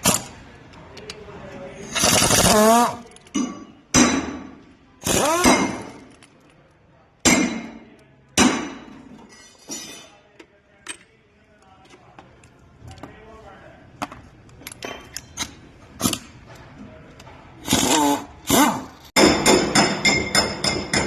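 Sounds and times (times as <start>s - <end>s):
metallic clanks of tools: 3.0s - 4.5s, 7.2s - 10.2s, 14.6s - 17.3s.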